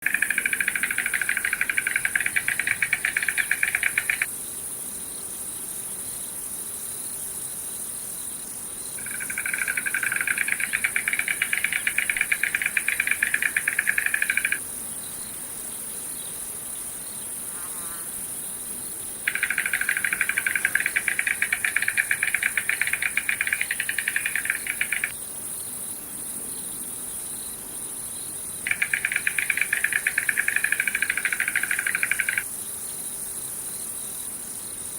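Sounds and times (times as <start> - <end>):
insect trilling buzz: 0.0 - 25.6, 28.4 - 33.8
high-pitched insect chorus: 0.0 - 34.9.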